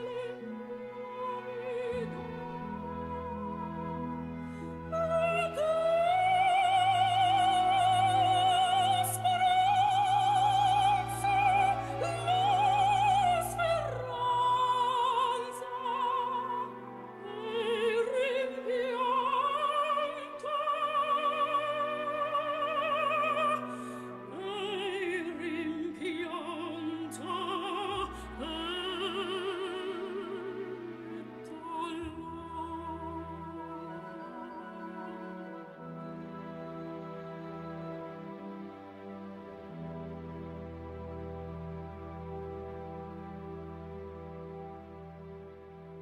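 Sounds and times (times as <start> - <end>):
classical accompaniment: 0.0 - 46.0.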